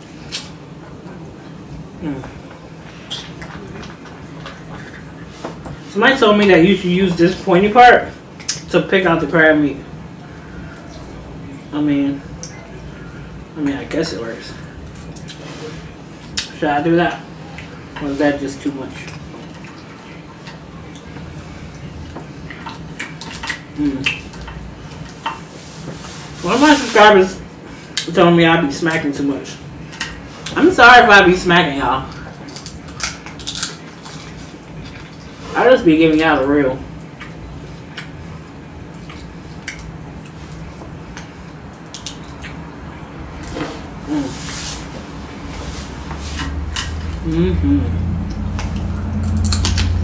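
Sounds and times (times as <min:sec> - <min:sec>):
steady low hum: 0:00.0 - 0:50.0
wet eating clicks and smacks: 0:08.4 - 0:08.7, 0:22.1 - 0:25.4, 0:38.9 - 0:42.7
crab shells clicking and cracking: 0:32.4 - 0:34.4.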